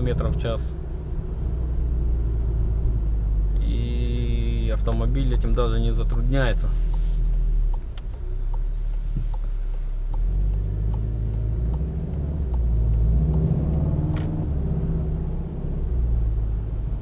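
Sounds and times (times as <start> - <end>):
car engine low rumble: 0.0 - 17.0.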